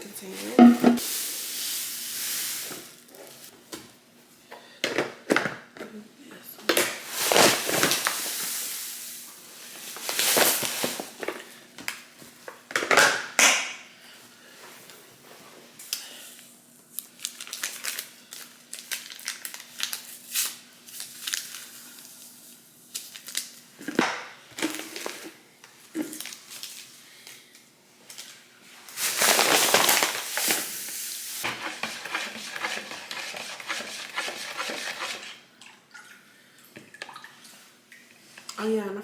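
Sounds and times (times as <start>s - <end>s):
dishes and utensils clinking: 0.6s - 1.0s.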